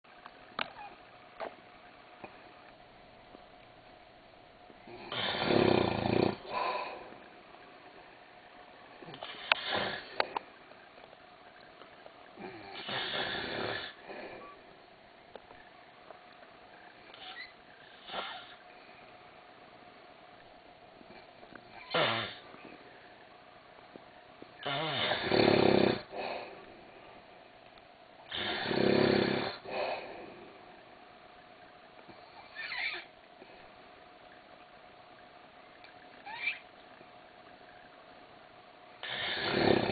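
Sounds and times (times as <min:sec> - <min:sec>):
man snoring: 0:04.9 - 0:07.1, 0:09.1 - 0:10.3, 0:12.4 - 0:14.0, 0:21.8 - 0:22.4, 0:24.6 - 0:26.2, 0:28.3 - 0:30.1, 0:39.0 - 0:39.9.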